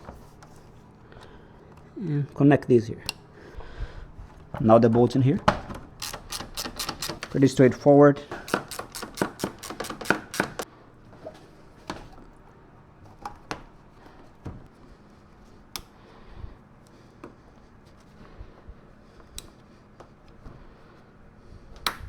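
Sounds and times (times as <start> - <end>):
tools clicking and knocking: 4.5 - 10.7.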